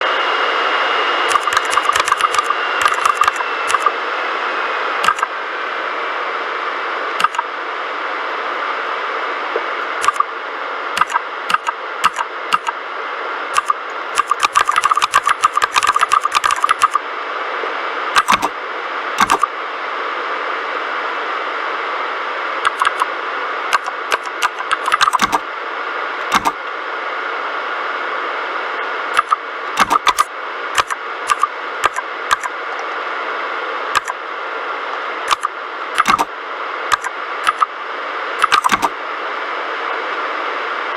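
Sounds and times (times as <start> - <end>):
mechanical keyboard typing: 1.3 - 3.9, 5.0 - 5.3, 7.2 - 7.4, 10.0 - 10.3, 11.0 - 12.8, 13.6 - 17.0, 18.2 - 18.5, 19.2 - 19.5, 22.6 - 23.1, 23.7 - 25.4, 26.3 - 26.6, 29.2 - 32.5, 34.0 - 34.2, 35.3 - 36.3, 36.9 - 37.7, 38.4 - 38.9.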